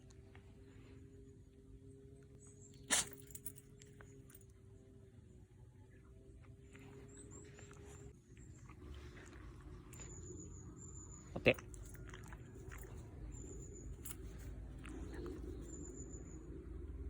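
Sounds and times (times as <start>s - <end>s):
dog sneezing: 2.8s - 3.5s
dog chewing mouth sounds: 11.4s - 15.8s.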